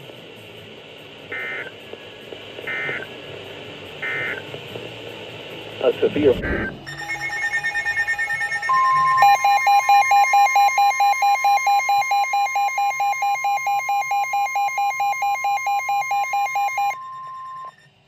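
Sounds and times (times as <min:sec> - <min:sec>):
steady warning alarm tone: 0:01.3 - 0:01.7, 0:02.6 - 0:03.1, 0:04.0 - 0:04.4, 0:06.5 - 0:18.0
rapid alert beeps: 0:06.6 - 0:17.8.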